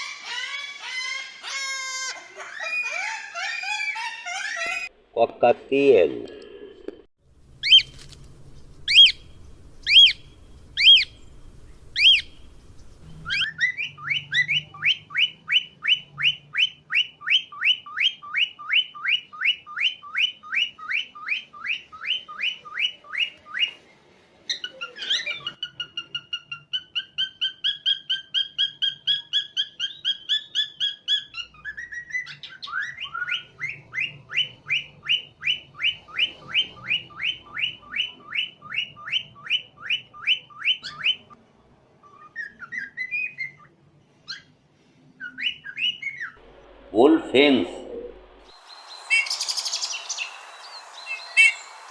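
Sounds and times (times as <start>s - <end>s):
cockatiel whistled calls: 7.6s - 7.9s, 8.9s - 11.2s, 12.0s - 12.4s, 13.2s - 23.8s, 24.5s - 41.3s, 42.1s - 43.7s, 45.2s - 46.4s, 48.5s - 51.9s
cockatiel rapid chirps: 7.6s - 8.0s, 8.8s - 11.2s, 12.0s - 12.4s.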